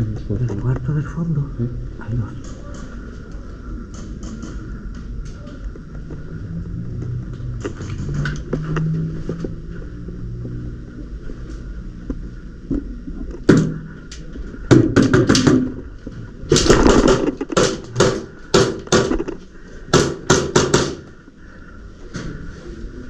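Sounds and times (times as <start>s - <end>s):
pellets striking walls and doors: 13.4s - 14.0s, 14.6s - 21.2s.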